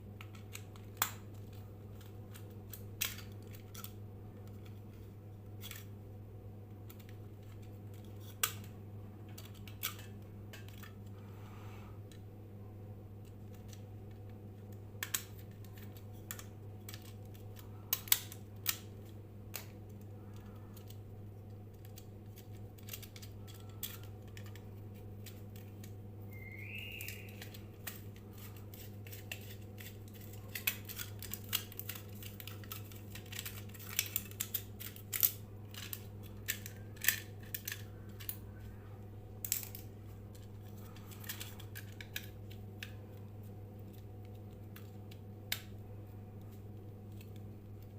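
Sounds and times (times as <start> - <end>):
steady low hum: 0.0 - 47.9
small tools clicking and snipping: 26.7 - 38.4.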